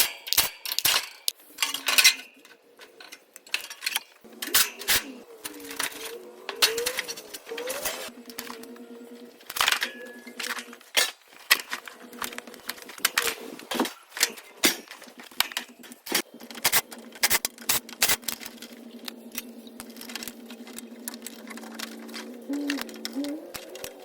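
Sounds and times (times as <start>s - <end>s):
tools clanking on sheet metal: 0.0s - 8.6s
steady low hum: 2.2s - 24.0s.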